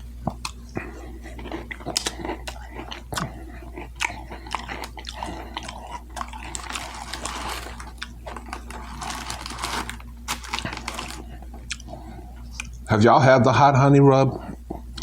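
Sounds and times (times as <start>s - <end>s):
wet chewing with mouth smacks: 0.2s - 6.6s, 10.6s - 12.8s.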